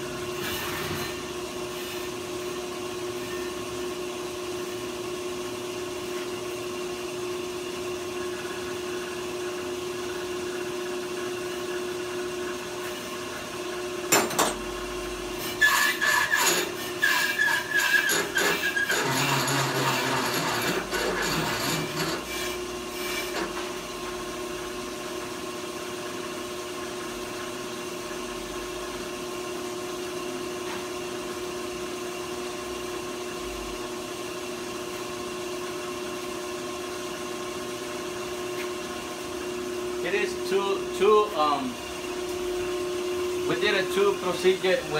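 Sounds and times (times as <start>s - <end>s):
metal scraping and squealing: 0.4s - 1.2s, 15.4s - 23.4s
brake lathe motor humming: 15.3s - 24.3s.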